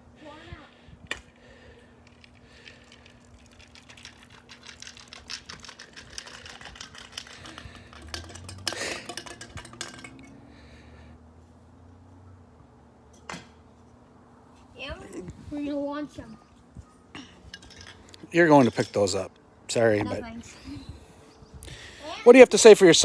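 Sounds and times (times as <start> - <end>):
soda pouring and fizzing: 2.6 - 9.3.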